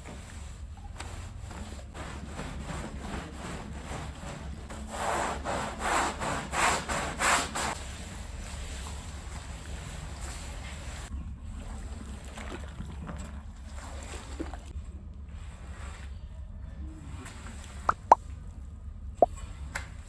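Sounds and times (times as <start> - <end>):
brush scrubbing a rug: 1.1 - 11.1.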